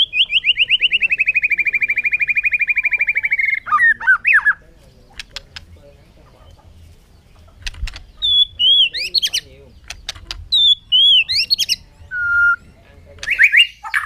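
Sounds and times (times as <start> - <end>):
bird trilling and whistling: 0.0 - 4.6, 7.6 - 14.0.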